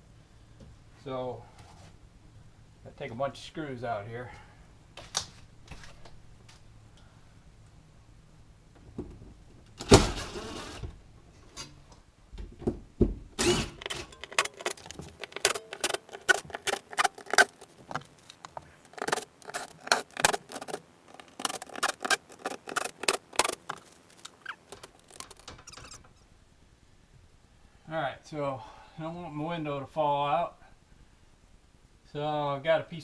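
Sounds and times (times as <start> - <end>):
hand tools and screws clicking: 13.4 - 26.0
short rustle: 13.4 - 26.0.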